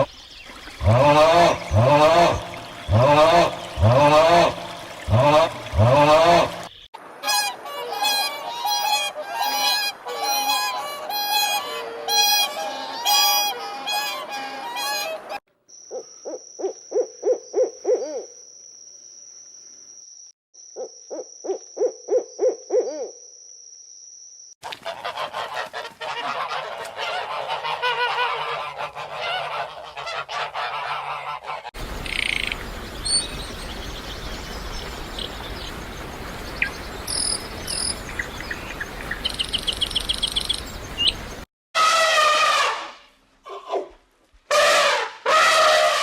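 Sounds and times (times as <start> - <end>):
outdoor background noise: 0.0 - 46.0
short bird chirps: 36.5 - 41.4.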